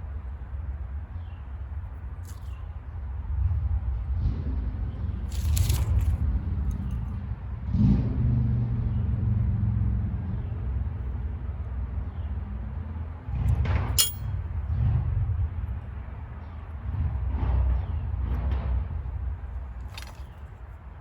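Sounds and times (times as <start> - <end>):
sharp metal clinks: 14.0 - 14.4.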